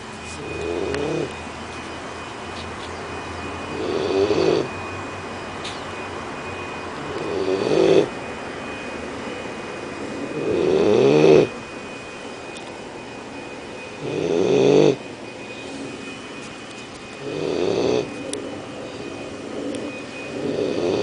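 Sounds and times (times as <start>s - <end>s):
puppy snoring: 0.4s - 1.4s, 3.6s - 4.8s, 7.0s - 8.1s, 10.3s - 11.5s, 14.0s - 15.0s, 17.2s - 18.2s, 19.5s - 21.0s.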